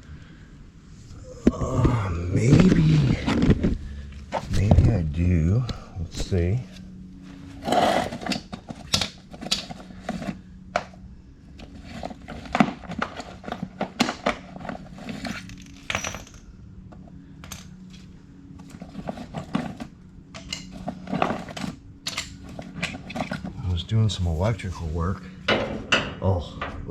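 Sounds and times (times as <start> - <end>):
steady low hum: 0.0 - 26.9
metal hand tools clinking: 15.1 - 16.4.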